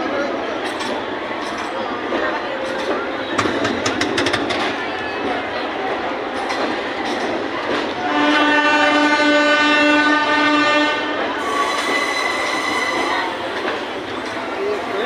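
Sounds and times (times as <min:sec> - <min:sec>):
moving train rumble: 0:00.5 - 0:15.0
train horn blowing: 0:08.0 - 0:15.0.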